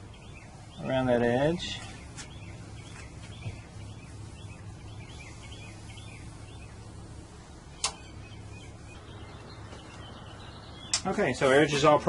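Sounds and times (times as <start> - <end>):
low steady hum: 0.0 - 12.0
small birds chirping: 0.0 - 12.0
sharp click: 7.8 - 8.0.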